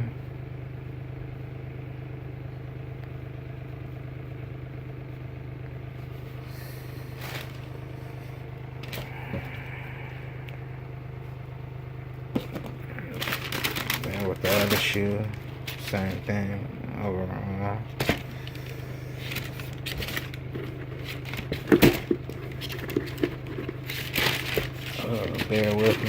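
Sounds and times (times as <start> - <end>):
low motor hum: 0.0 - 26.0
handling clicks and knocks: 19.2 - 26.0.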